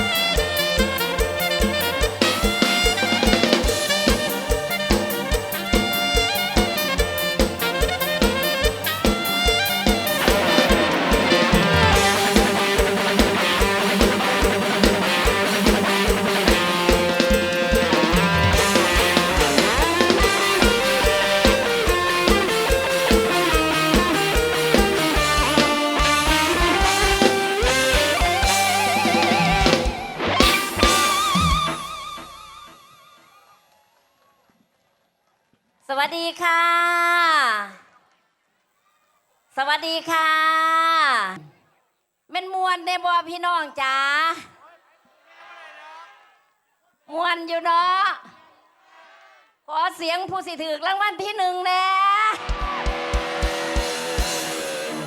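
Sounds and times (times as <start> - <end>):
plucked guitar melody: 0.0 - 32.4, 52.5 - 55.0
band playing instrumental music: 0.0 - 32.9, 52.4 - 55.0.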